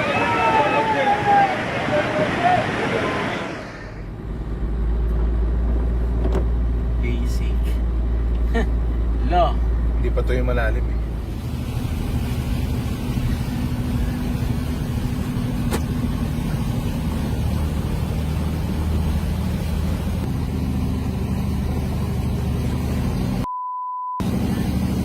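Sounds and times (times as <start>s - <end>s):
vehicle engine under load: 3.5s - 23.5s
short steady beep: 23.4s - 24.2s.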